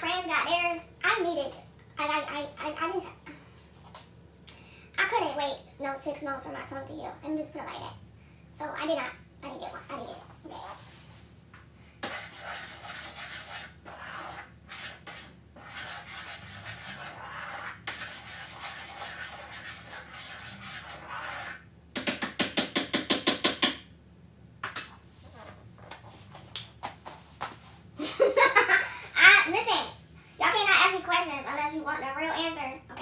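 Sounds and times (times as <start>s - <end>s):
scraping and rubbing: 12.0s - 21.6s.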